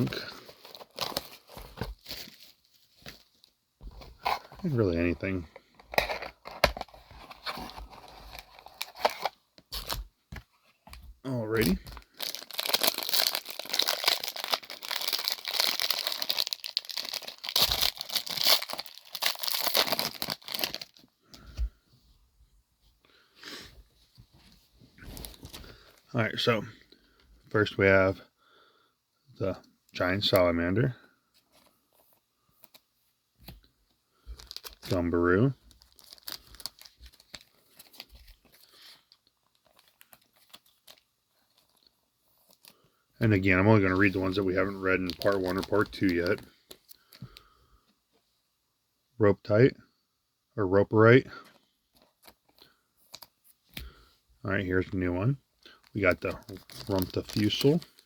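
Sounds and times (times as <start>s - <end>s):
plastic wrapping tearing and crinkling: 11.6s - 21.0s, 34.4s - 35.0s, 35.8s - 42.8s, 44.0s - 46.4s, 56.0s - 58.0s.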